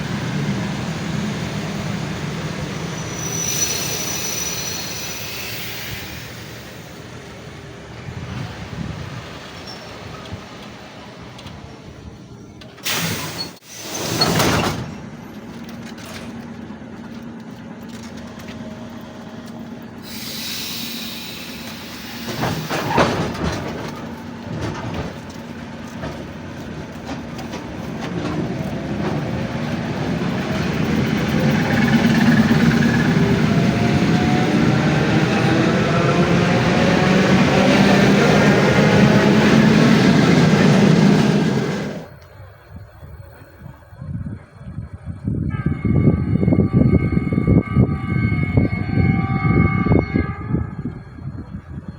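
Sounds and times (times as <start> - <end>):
train wheels clattering: 12.5 - 43.1.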